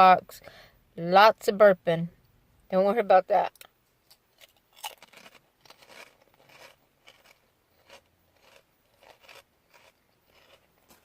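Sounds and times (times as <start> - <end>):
crisps being chewed: 4.1 - 11.0.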